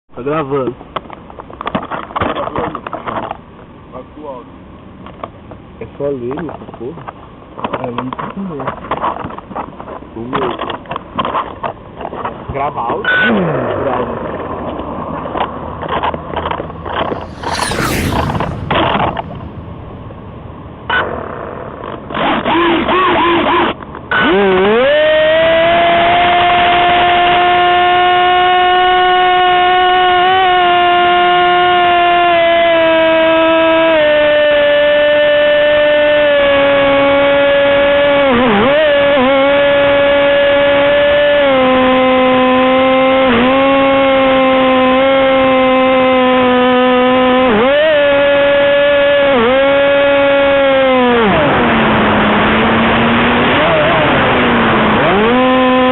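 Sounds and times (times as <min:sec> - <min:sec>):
small aircraft engine: 0:16.4 - 0:21.9
motor spinning up whine: 0:16.8 - 0:21.1.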